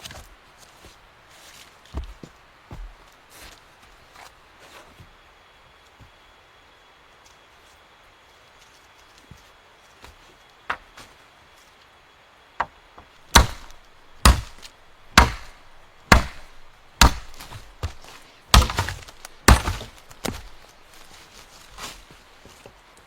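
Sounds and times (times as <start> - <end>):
hard chopping blows: 13.3 - 21.2.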